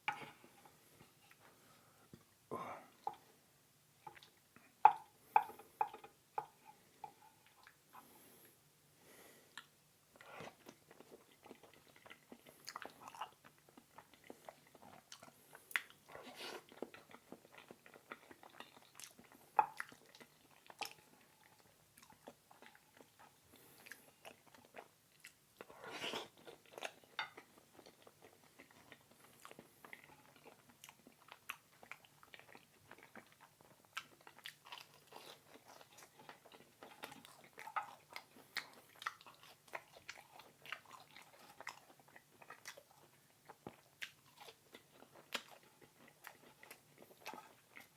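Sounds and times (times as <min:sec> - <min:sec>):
wet chewing: 0:09.6 - 0:47.9.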